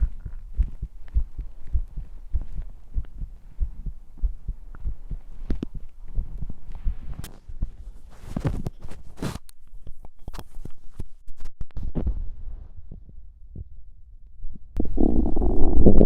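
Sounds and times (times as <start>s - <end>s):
soft low body thumps: 0.0s - 7.8s
microphone rubbing and clicking: 0.0s - 13.7s, 14.8s - 16.0s.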